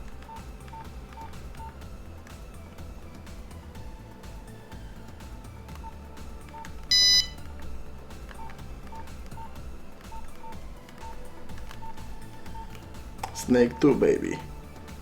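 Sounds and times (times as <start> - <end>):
faint keypad beeps: 0.2 - 1.8, 5.8 - 7.4, 8.3 - 14.4
loud high beep: 6.9 - 7.4.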